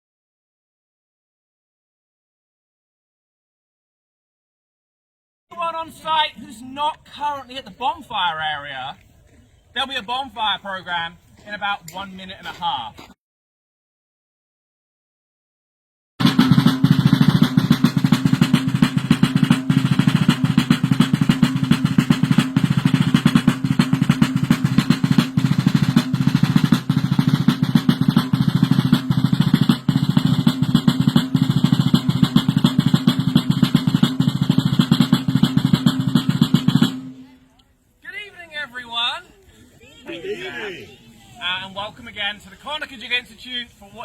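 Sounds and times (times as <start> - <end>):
snare drum roll: 16.2 - 37.3.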